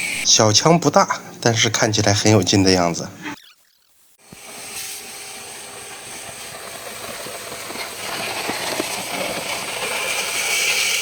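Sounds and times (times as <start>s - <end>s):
pressure washer spraying water: 4.3s - 11.0s.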